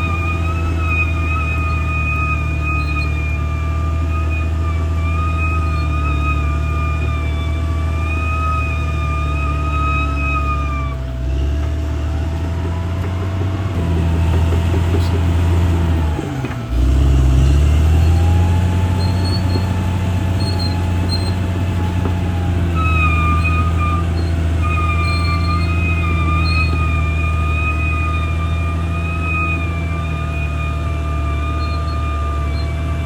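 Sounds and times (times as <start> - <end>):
high whistling whine: 0.0 - 11.2, 17.8 - 33.0
bulldozer diesel engine under load: 0.0 - 33.0.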